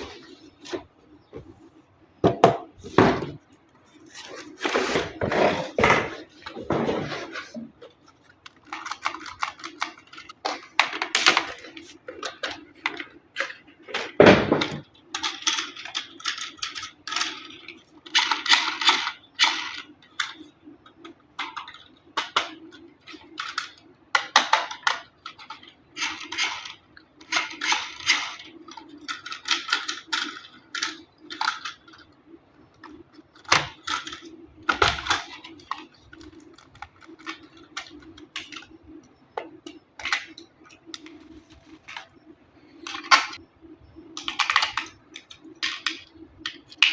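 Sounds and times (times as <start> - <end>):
plastic packaging crinkling: 40.0 - 42.2.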